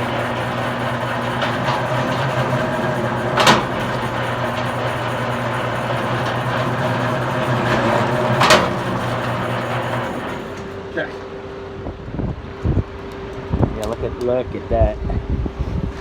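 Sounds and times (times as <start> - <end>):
wire stripping machine humming: 0.0 - 11.3.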